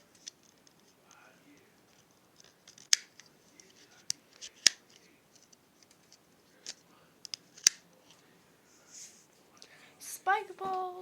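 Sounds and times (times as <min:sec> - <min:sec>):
plastic toy clicks: 0:02.6 - 0:03.2.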